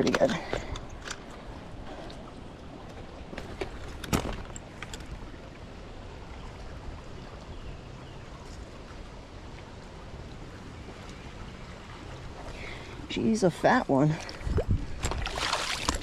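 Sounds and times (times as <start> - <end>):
wind buffeting microphone: 14.1 - 16.0.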